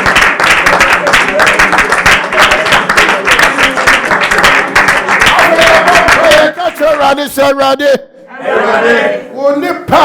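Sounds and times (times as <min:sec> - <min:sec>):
group clapping: 0:00.0 - 0:07.3
voices praying aloud: 0:05.2 - 0:07.6, 0:08.2 - 0:10.0.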